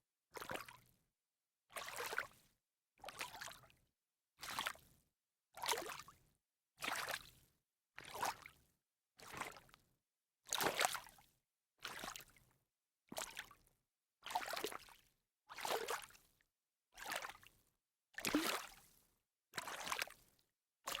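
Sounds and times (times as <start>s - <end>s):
footsteps splashing in shallow water: 18.2s - 18.7s.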